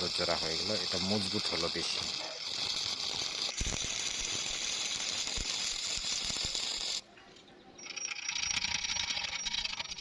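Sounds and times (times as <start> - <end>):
welding arc crackling: 0.0 - 7.0.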